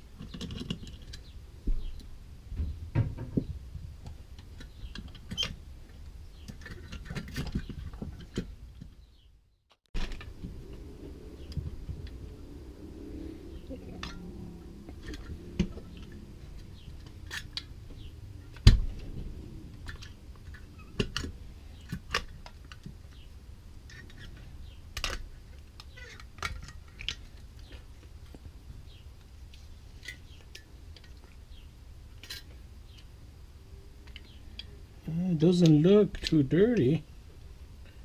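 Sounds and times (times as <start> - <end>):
clinks of tools and metal parts: 13.9 - 18.6, 32.2 - 32.6.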